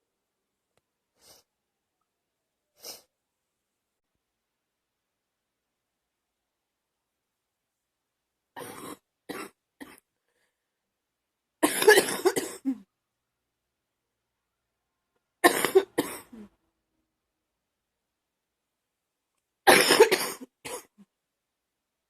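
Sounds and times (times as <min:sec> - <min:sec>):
girl coughing: 0:11.6 - 0:12.8, 0:15.4 - 0:16.4, 0:19.7 - 0:21.0.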